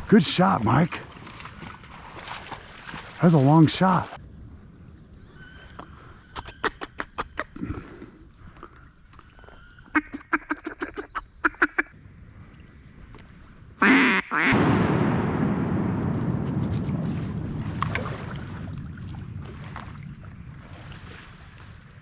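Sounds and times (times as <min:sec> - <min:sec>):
duck quacks: 0:13.8 - 0:14.6
loud rush of noise: 0:14.6 - 0:18.8.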